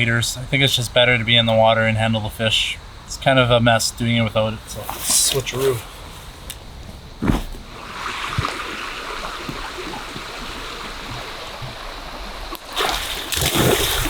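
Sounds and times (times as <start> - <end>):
river water rushing: 7.1 - 14.0.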